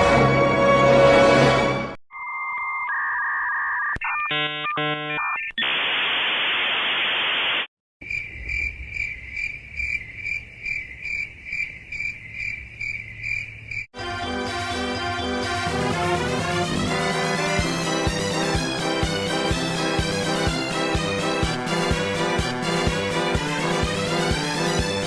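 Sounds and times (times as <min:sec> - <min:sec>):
electronic beep: 0:02.1 - 0:05.8
stepping electronic tones: 0:02.1 - 0:07.7
loud static hiss: 0:05.6 - 0:07.7
crickets chirping: 0:08.0 - 0:13.9.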